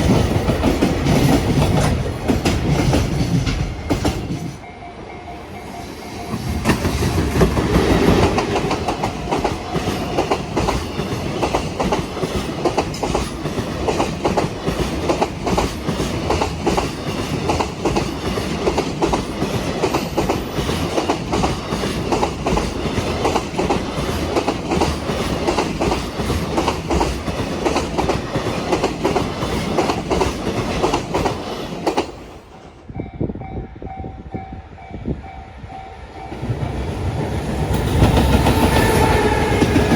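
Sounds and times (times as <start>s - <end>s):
train wheels clattering over rails: 0.0s - 4.6s, 6.2s - 32.7s, 36.3s - 39.9s
level crossing warning bell: 3.8s - 7.2s.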